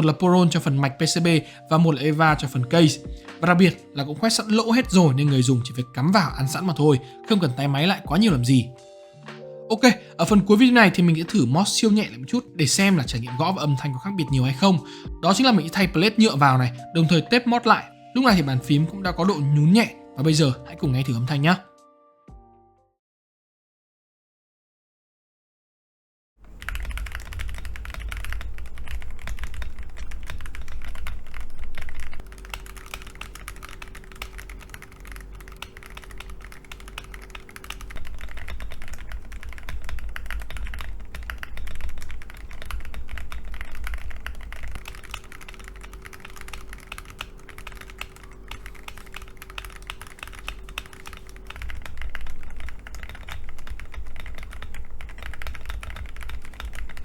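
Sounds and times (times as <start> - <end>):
mechanical keyboard typing: 1.9 - 8.5, 26.4 - 57.0.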